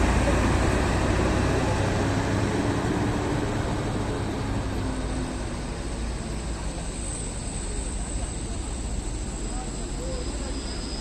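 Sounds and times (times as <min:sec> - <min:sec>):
bus diesel engine rumbling: 0:00.0 - 0:11.0.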